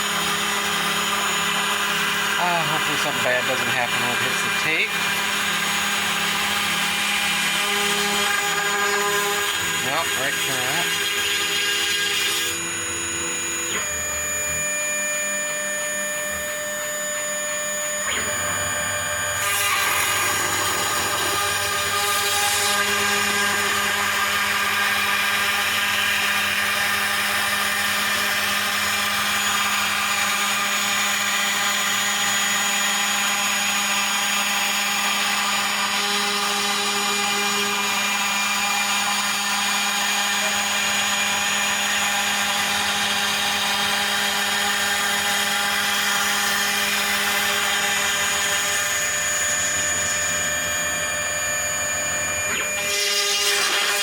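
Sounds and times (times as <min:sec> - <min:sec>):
router spindle whining: 0:00.0 - 0:54.0
stepper motors driving: 0:02.3 - 0:05.1.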